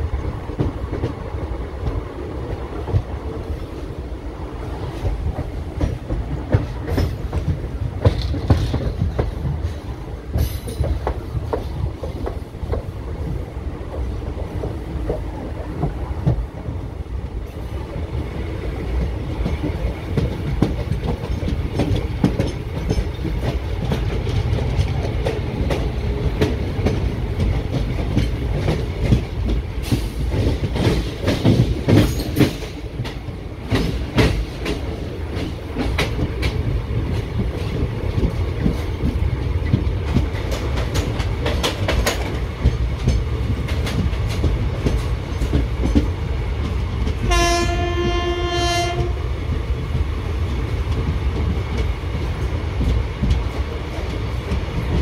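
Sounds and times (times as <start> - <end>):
train wheels clicking on rails: 0.0 - 55.0
locomotive horn blast: 47.2 - 49.2.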